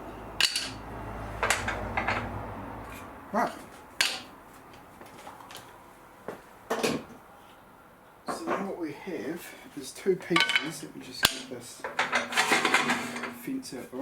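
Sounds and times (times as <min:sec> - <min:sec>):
wooden pieces knocking: 0:00.4 - 0:00.8, 0:01.4 - 0:02.4, 0:04.0 - 0:04.4, 0:10.4 - 0:13.4.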